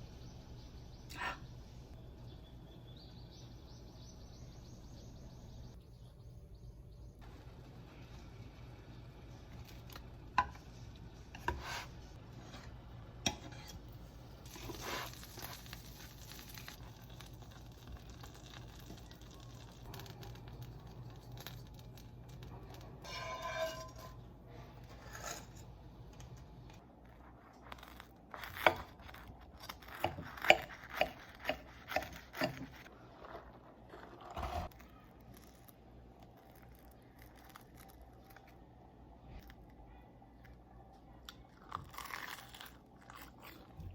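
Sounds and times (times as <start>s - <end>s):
tearing and crinkling: 33.2s - 38.6s.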